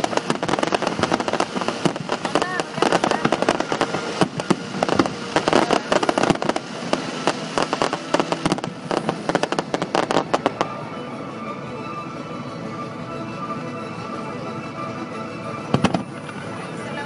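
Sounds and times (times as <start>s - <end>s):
fireworks bangs and crackles: 0.0s - 10.8s, 15.7s - 16.4s.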